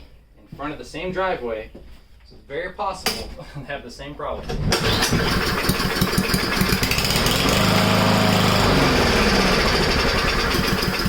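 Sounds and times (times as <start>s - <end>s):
lawn mower engine running unevenly: 4.8s - 11.0s.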